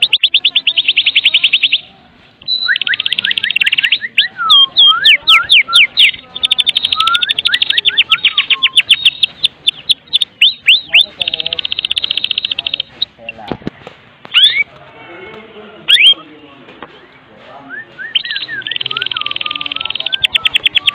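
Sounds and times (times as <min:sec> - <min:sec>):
bird whistles and chips: 0:17.7 - 0:20.9.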